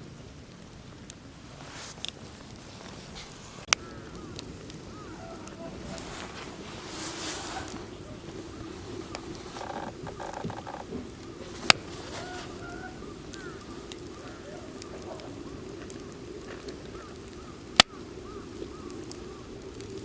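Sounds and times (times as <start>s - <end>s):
campfire burning: 0.0s - 20.0s
faint crackles: 0.0s - 20.0s
loud sharp fire pops: 13.2s - 20.0s.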